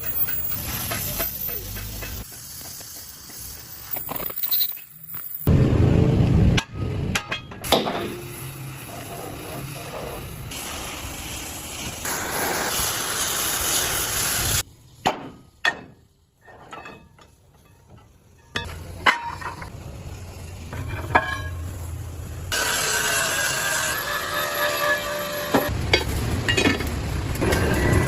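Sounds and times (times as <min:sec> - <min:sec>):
sharp metal knocks and clanks: 0:00.0 - 0:02.4, 0:06.5 - 0:08.3
loud machining grinding noise: 0:22.5 - 0:25.7.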